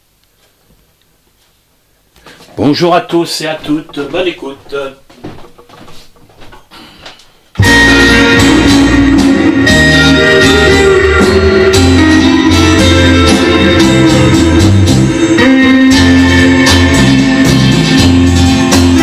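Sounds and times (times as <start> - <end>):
rock and roll band music: 7.6 - 19.0.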